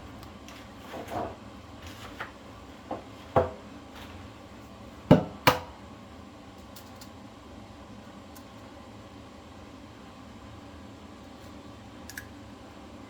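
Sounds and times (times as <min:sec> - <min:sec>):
kitchenware knocking on counter: 0:02.9 - 0:03.6.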